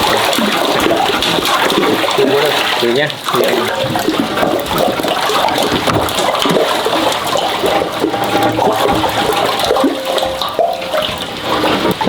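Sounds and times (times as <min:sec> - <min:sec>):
water rushing and splashing: 0:00.0 - 0:12.0.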